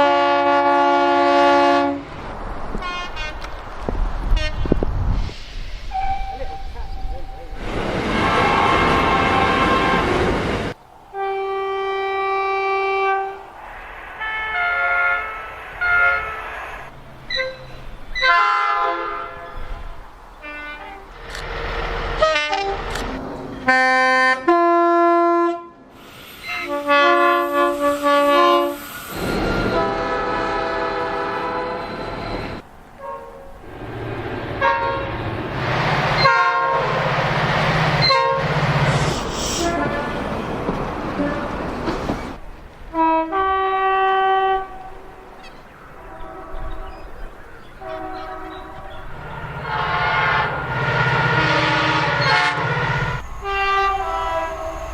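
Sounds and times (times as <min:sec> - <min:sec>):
train horns: 0:00.0 - 0:02.1, 0:02.7 - 0:03.6, 0:04.2 - 0:04.9, 0:05.9 - 0:13.4, 0:14.1 - 0:33.6, 0:34.5 - 0:37.1, 0:37.8 - 0:40.4, 0:41.0 - 0:42.0, 0:42.9 - 0:54.9
train running noise and engine hum: 0:00.0 - 0:54.9.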